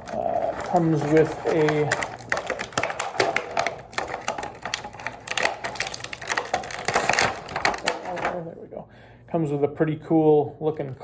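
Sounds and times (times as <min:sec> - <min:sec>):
plastic packaging clicking and crackling: 0:00.0 - 0:08.5.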